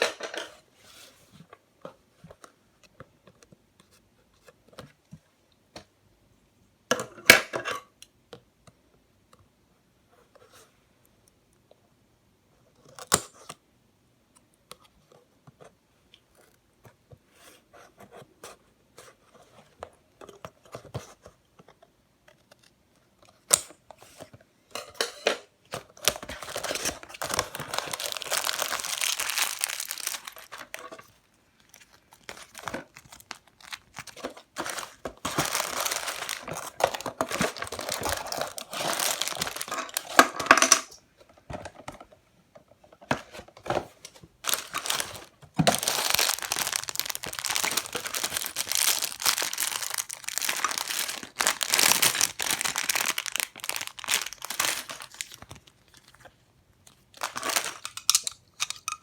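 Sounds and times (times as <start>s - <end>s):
packaging crinkling and tearing: 25.8s - 40.4s, 44.4s - 59.0s.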